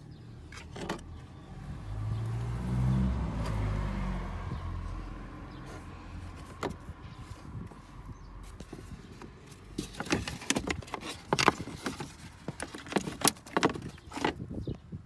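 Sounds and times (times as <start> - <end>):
clicks and rattles of plastic and metal parts: 0.4 - 1.3, 5.7 - 7.9, 8.5 - 14.8.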